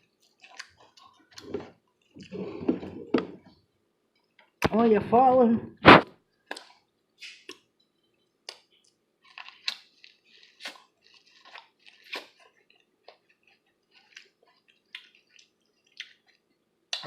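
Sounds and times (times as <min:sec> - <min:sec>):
chewing corn on the cob: 0:00.0 - 0:02.4, 0:08.4 - 0:17.0.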